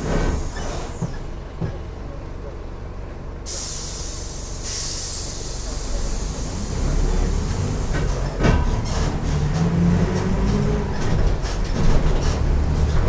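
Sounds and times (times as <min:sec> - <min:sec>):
bus diesel engine pulling: 0:00.0 - 0:13.0
air hiss: 0:03.5 - 0:08.0.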